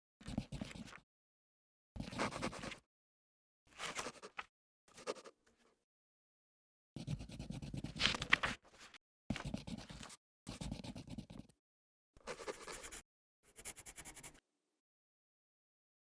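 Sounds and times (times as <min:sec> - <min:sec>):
pencil scratching on paper: 0:00.2 - 0:01.0, 0:02.0 - 0:02.8, 0:07.0 - 0:08.6, 0:09.3 - 0:11.6, 0:12.2 - 0:14.4.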